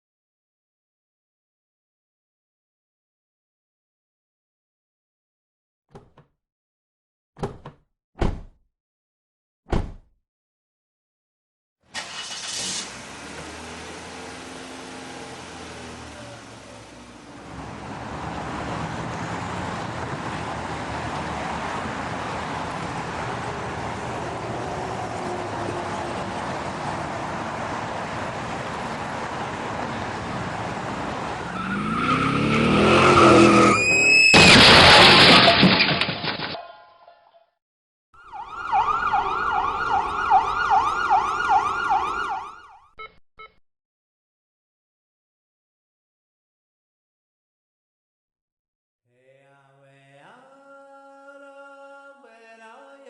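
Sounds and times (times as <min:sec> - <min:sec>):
car engine steady tones: 0:11.9 - 0:34.0
car and road noise rushing: 0:11.9 - 0:36.4, 0:38.4 - 0:42.5
siren yelping: 0:31.5 - 0:34.4, 0:38.2 - 0:43.0.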